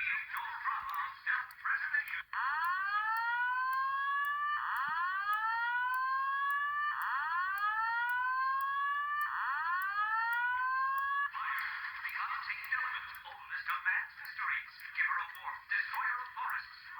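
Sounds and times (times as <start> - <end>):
faint ticks: 0.0 - 16.9
fire alarm rising whoop tone: 2.4 - 11.4.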